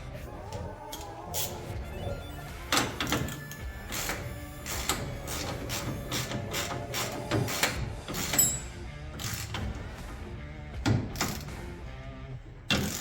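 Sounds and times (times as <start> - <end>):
ratchet wrench clicking: 3.1 - 9.8, 11.1 - 11.5, 12.7 - 13.0.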